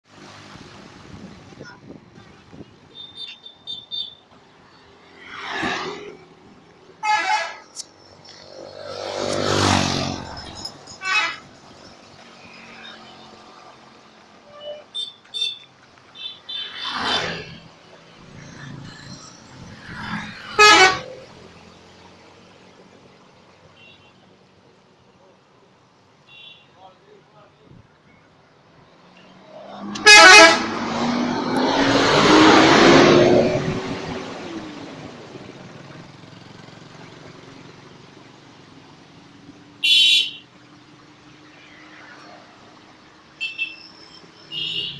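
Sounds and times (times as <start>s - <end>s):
musical air horn blast: 20.6s - 21.1s, 29.8s - 31.0s.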